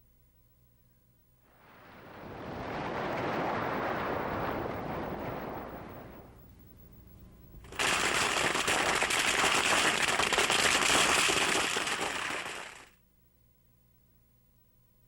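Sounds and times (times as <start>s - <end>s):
firecrackers crackling: 1.5s - 6.4s, 7.6s - 13.0s.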